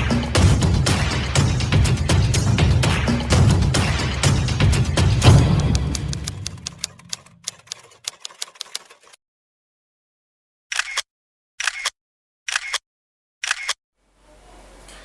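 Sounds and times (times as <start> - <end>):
intro music with clicking beat: 0.0 - 8.8
sharp clacking sound effects: 5.1 - 9.2.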